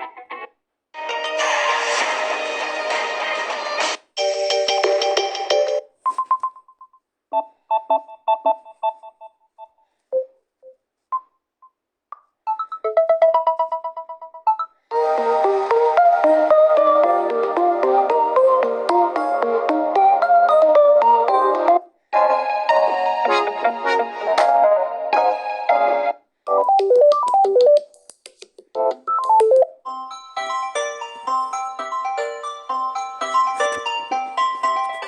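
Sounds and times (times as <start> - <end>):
phone ringtone tune: 4.2 - 6.8, 12.5 - 15.3, 29.1 - 35.0
plinking repeated notes: 28.8 - 35.0.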